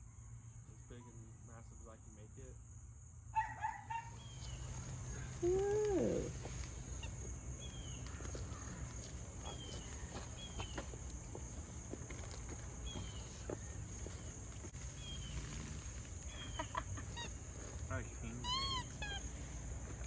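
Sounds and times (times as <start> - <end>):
loud bird call: 3.4 - 11.0, 15.0 - 19.7
birds chirping: 3.4 - 20.0.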